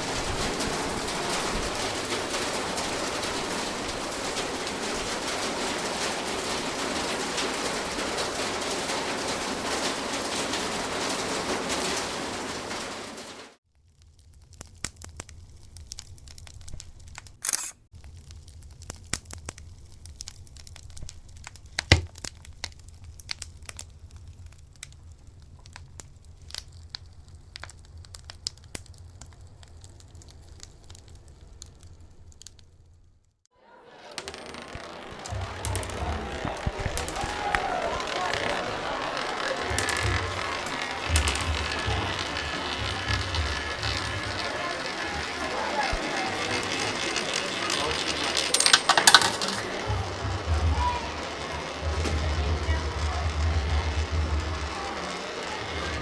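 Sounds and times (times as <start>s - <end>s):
heavy rain hissing: 0.0s - 13.6s, 34.9s - 46.2s
crackles and clicks: 0.0s - 48.4s.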